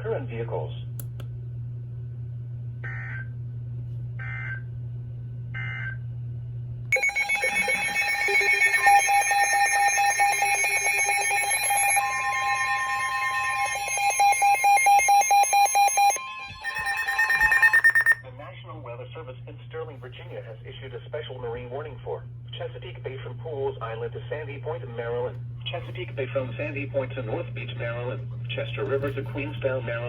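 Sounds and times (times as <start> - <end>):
pulsing electronic alert alarm: 6.9 - 18.2
steady electronic tone: 6.9 - 18.2
warbling data bursts: 6.9 - 18.2.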